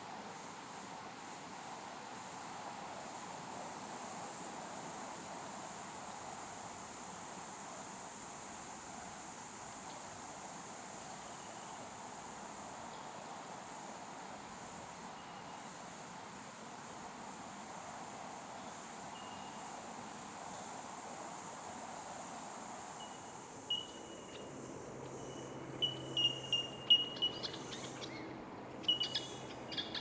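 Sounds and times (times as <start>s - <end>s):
insects droning: 0.1s - 30.0s.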